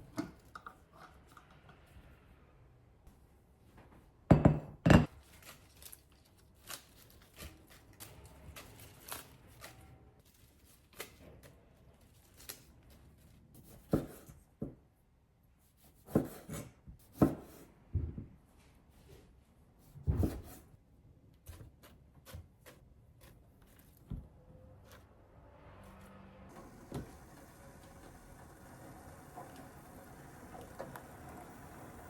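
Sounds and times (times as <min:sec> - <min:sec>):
knife on cutting board: 0:15.8 - 0:17.6.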